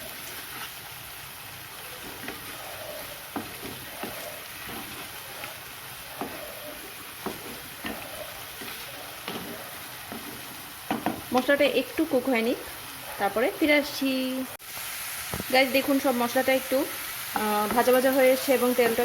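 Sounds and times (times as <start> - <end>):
paste sizzling in hot oil: 0.0 - 19.0
spatula scraping a pan: 2.0 - 11.4.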